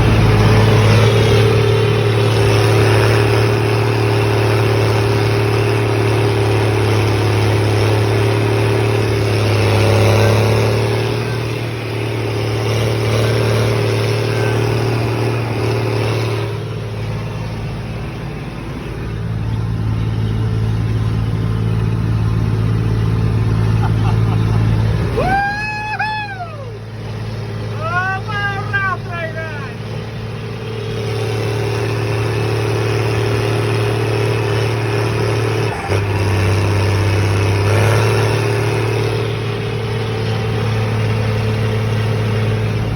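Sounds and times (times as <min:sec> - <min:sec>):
engine deep rumble: 0:00.0 - 0:42.9.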